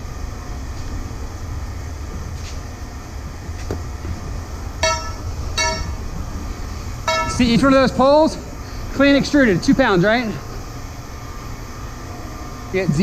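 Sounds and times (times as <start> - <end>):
vehicle engine rumble: 0.0 - 12.8
short high beeps: 4.8 - 6.0, 7.1 - 7.4.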